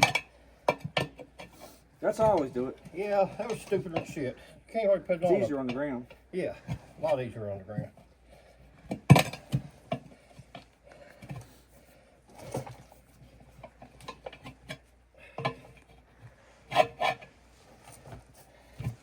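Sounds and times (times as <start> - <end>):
tire bar scraping and clanking on rim: 0.0 - 4.4, 8.9 - 11.7, 12.3 - 15.9, 16.6 - 19.0.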